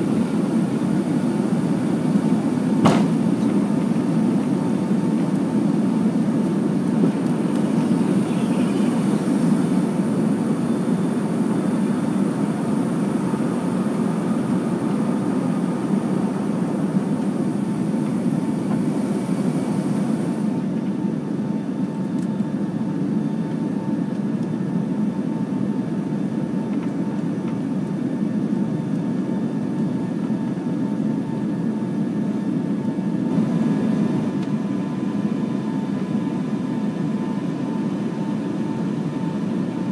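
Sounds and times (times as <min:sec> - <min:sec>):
jet engine cabin rushing noise: 0:00.0 - 0:20.8.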